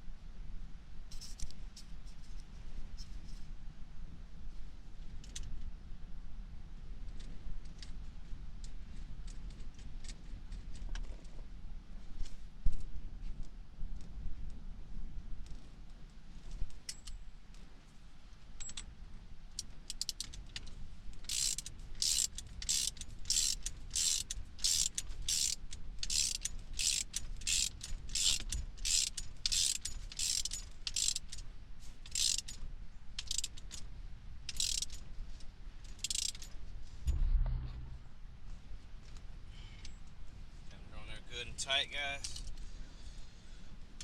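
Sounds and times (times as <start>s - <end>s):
ratchet wrench clicking: 19.9s - 20.4s, 21.2s - 31.4s, 32.0s - 32.6s, 33.2s - 33.8s, 34.5s - 35.0s, 35.9s - 36.5s
dull thump: 37.0s - 38.2s.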